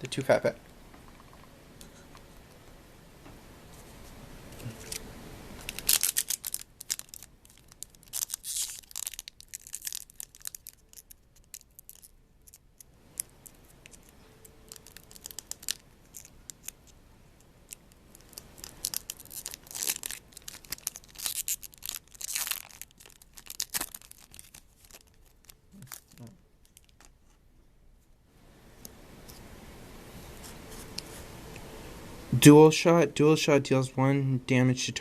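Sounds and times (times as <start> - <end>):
foil wrapper tearing and crinkling: 5.6 - 17.0, 17.7 - 27.1.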